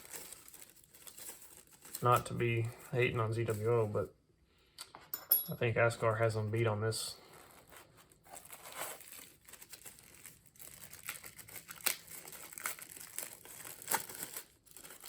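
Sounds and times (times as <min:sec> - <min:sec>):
packaging crinkling: 0:00.0 - 0:03.8, 0:07.2 - 0:15.0.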